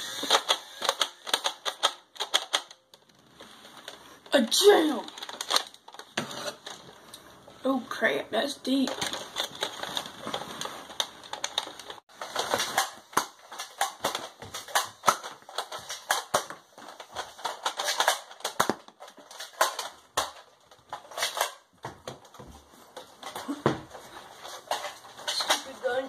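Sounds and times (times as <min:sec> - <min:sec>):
plastic toy blaster clicking: 0:00.0 - 0:02.8, 0:17.1 - 0:20.4.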